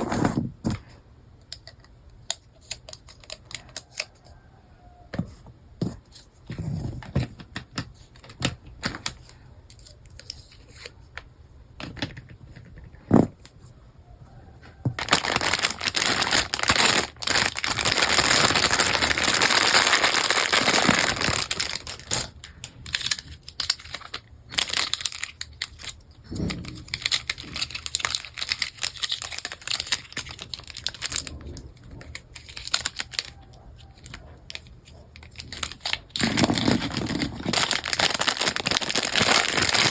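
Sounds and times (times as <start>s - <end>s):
plastic pieces clicking: 1.4s - 4.2s, 15.0s - 39.9s
plastic wrap crinkling and tearing: 15.0s - 39.9s.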